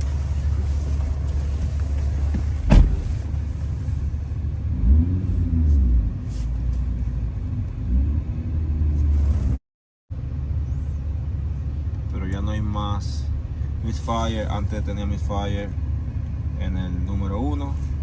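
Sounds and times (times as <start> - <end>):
car engine revving: 4.7 - 6.1.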